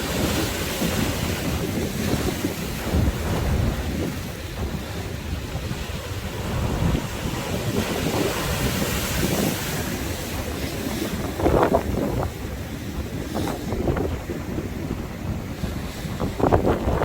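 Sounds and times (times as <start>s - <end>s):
sea waves breaking on shore: 0.0s - 17.0s
wind buffeting microphone: 0.0s - 17.0s.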